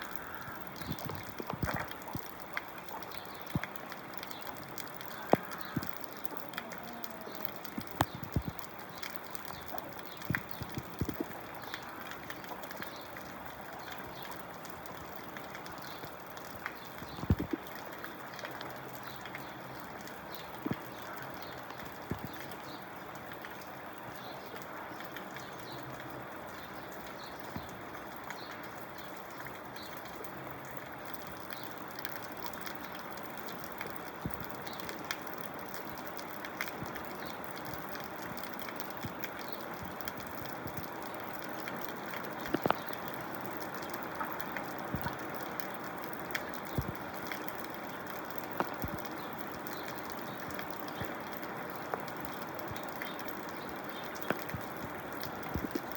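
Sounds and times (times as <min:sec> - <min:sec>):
running water wash: 0:00.0 - 0:22.8
water drips and plops: 0:00.0 - 0:55.9.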